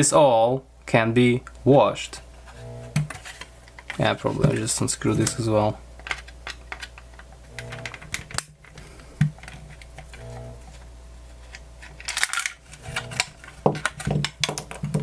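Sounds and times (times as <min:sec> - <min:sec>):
screwdriver and plastic parts clicking: 0:06.0 - 0:08.8, 0:11.5 - 0:15.0.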